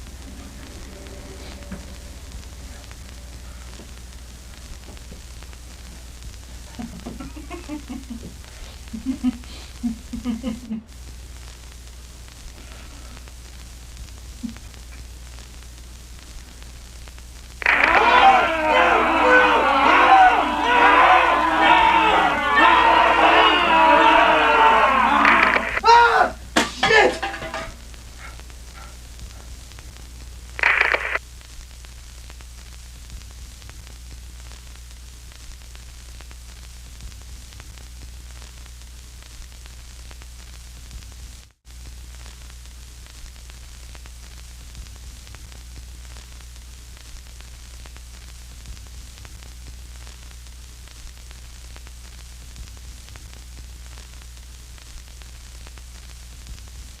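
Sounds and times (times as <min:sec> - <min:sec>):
loud burst of noise: 0:00.0 - 0:07.3, 0:17.6 - 0:25.9, 0:30.5 - 0:31.2
low electrical hum: 0:00.0 - 0:57.0
recording hiss: 0:00.0 - 0:57.0.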